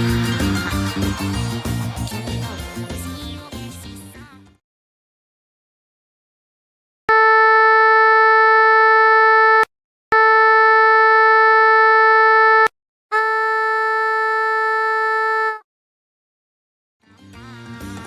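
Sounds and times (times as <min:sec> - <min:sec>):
synthesized sine tones: 0:07.1 - 0:14.4.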